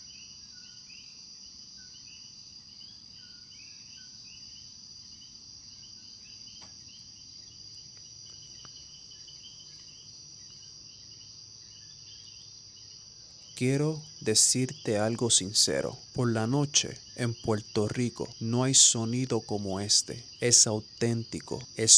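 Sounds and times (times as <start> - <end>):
high-pitched insect drone: 13.5 - 21.9.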